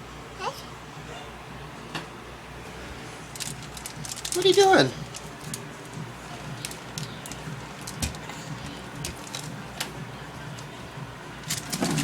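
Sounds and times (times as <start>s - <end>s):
items handled in refrigerator: 3.0s - 12.0s.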